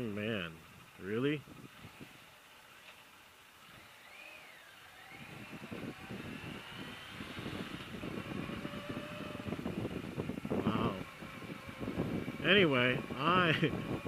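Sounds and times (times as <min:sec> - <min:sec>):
motorcycle engine accelerating: 0:00.0 - 0:14.0
wind buffeting the microphone: 0:00.7 - 0:02.2, 0:05.1 - 0:14.0.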